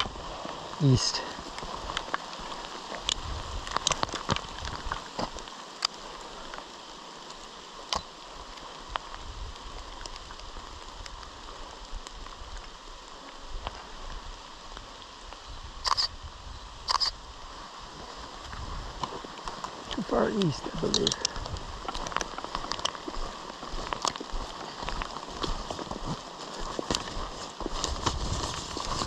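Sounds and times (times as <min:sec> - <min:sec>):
steady rain falling: 0:00.0 - 0:29.0.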